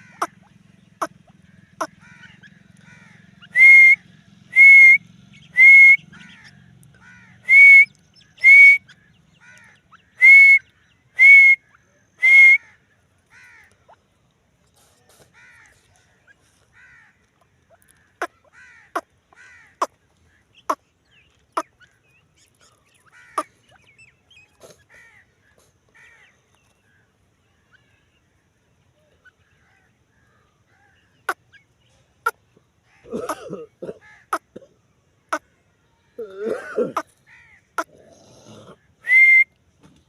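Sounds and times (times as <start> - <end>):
bird giving harsh calls: 0.0 - 4.0, 21.5 - 26.3.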